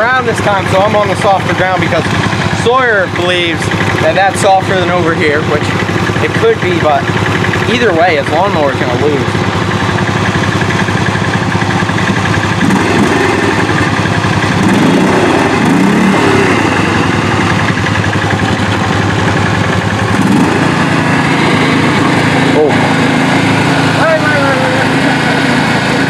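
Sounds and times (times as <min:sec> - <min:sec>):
small engines running: 0:00.0 - 0:26.0.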